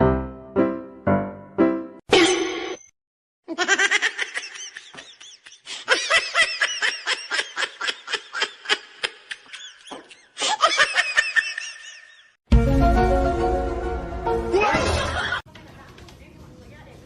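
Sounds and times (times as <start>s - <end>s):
person laughing hard: 3.5s - 12.3s.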